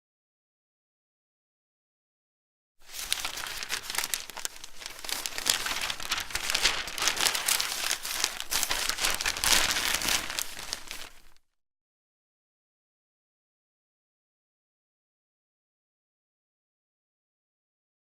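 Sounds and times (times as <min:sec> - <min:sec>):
newspaper pages rustling: 0:02.8 - 0:11.4.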